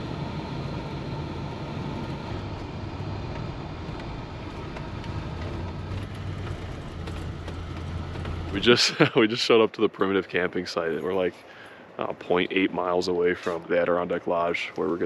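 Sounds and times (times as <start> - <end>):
low engine hum: 0.0 - 9.4
road noise: 0.0 - 15.0.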